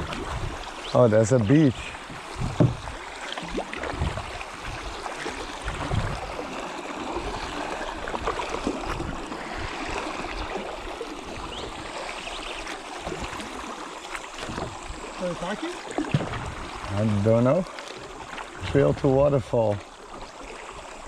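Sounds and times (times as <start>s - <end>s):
water sloshing and trickling: 0.0s - 21.0s
light knocks on kayak: 2.1s - 3.0s, 16.0s - 16.5s.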